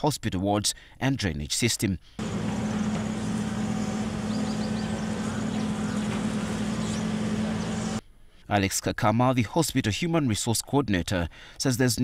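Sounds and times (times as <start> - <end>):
motor hum: 2.2 - 8.0.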